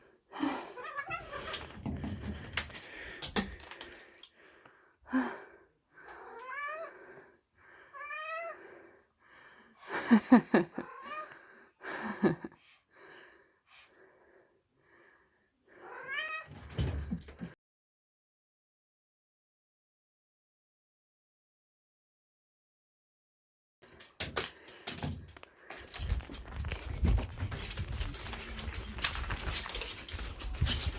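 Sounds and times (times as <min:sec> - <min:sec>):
cat meowing: 0:00.8 - 0:01.6, 0:06.3 - 0:07.0, 0:07.9 - 0:08.6, 0:15.8 - 0:16.5
thumps and scuffles of play: 0:01.1 - 0:03.9, 0:23.9 - 0:30.9.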